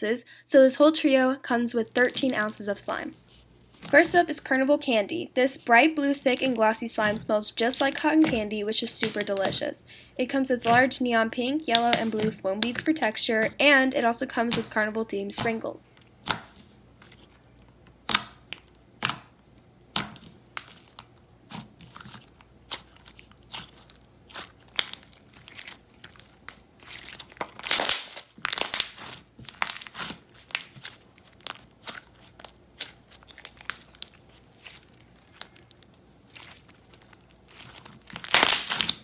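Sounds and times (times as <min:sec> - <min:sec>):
slime crunching and crackling: 0:01.8 - 0:39.0
sticky slime pops: 0:10.6 - 0:10.8, 0:18.0 - 0:20.8, 0:27.4 - 0:30.9, 0:38.1 - 0:39.0.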